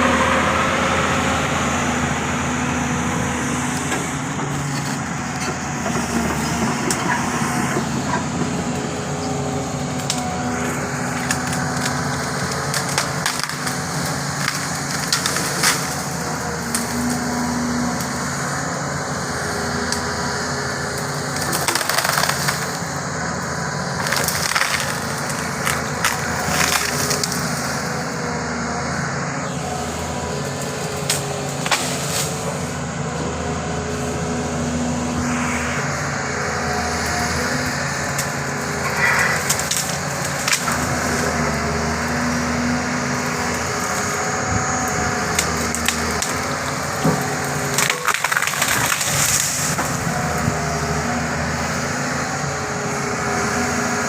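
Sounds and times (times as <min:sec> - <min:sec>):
excavator diesel engine running: 0:00.0 - 0:54.0
wood cracking and splintering: 0:09.1 - 0:17.2, 0:20.8 - 0:23.0, 0:23.7 - 0:27.9, 0:37.3 - 0:50.9.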